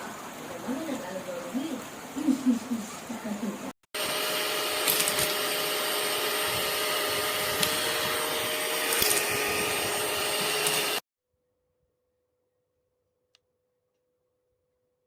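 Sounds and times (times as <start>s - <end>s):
handheld vacuum cleaner running: 3.9s - 11.0s.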